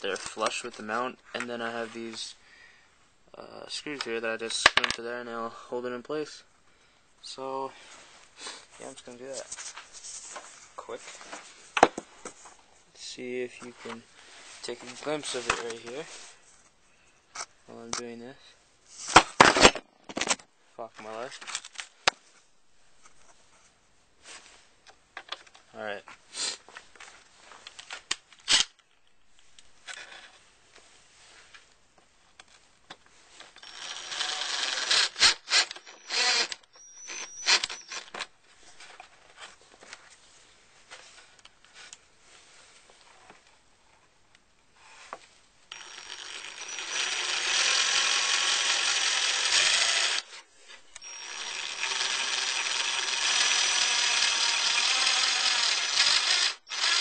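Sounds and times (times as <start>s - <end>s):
power drill driving screws: 33.5s - 38.3s, 45.7s - 57.0s.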